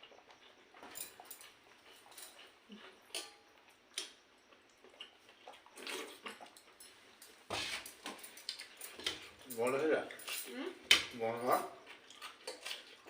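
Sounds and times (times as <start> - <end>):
wet eating squishes: 1.5 - 9.5.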